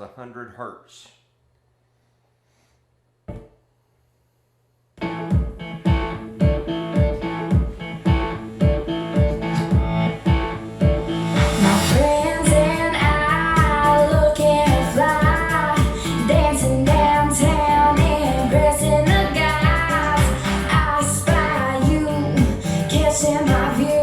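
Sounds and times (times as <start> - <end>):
kick drum beat: 5.3 - 23.7
pop song with female vocal: 11.4 - 24.0.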